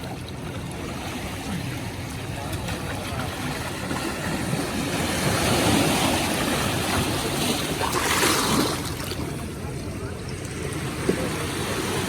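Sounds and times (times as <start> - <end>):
sea waves washing onto beach: 0.0 - 12.0.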